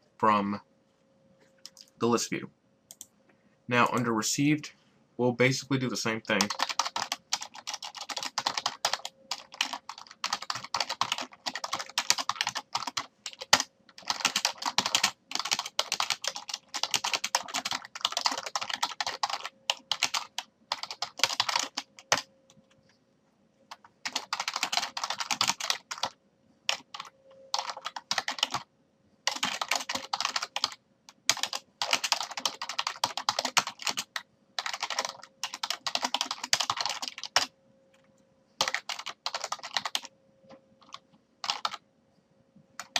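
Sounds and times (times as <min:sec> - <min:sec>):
faint steady hum: 0:00.0 - 0:42.9
typing on computer keyboard: 0:06.3 - 0:22.3, 0:23.7 - 0:28.6, 0:29.3 - 0:37.5, 0:38.6 - 0:40.1, 0:40.8 - 0:41.8.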